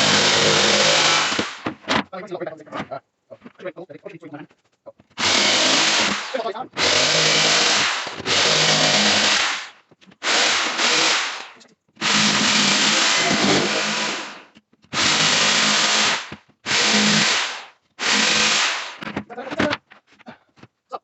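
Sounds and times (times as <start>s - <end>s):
electric power tool bursts: 0.0s - 1.6s, 5.2s - 14.4s, 15.0s - 19.0s.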